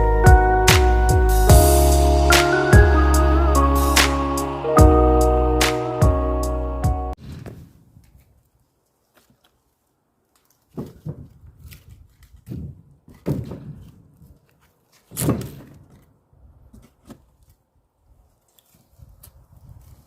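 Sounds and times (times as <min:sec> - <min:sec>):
axe splitting logs: 0:10.6 - 0:17.5.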